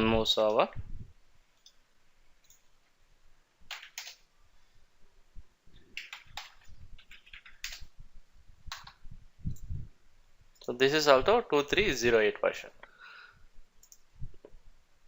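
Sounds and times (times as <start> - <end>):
computer mouse and keyboard clicks: 8.7 - 9.7, 13.8 - 14.1.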